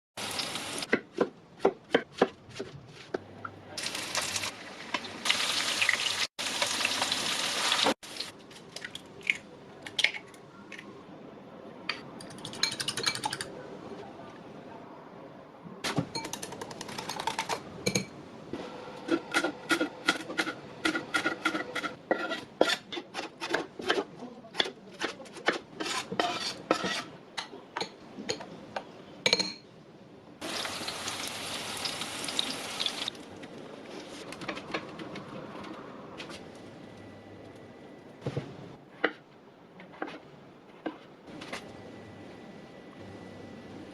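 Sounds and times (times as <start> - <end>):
metal utensils clinking against bowl: 12.2 - 13.5.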